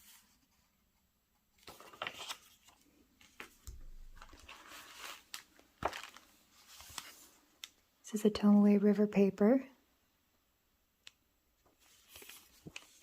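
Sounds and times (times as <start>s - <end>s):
paper rustling and scratching: 1.6s - 7.4s, 11.8s - 13.0s.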